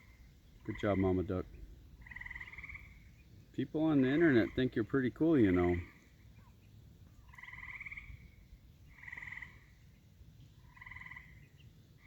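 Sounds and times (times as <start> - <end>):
frogs trilling faintly: 0.0 - 12.0.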